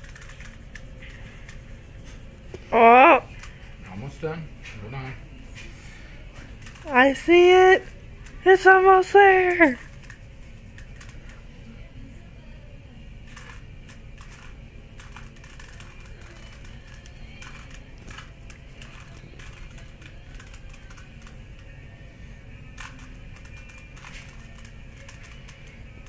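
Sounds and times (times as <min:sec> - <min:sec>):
faint steady hum: 0:00.0 - 0:26.0
puzzle cube clicking: 0:13.3 - 0:21.4, 0:22.8 - 0:25.5.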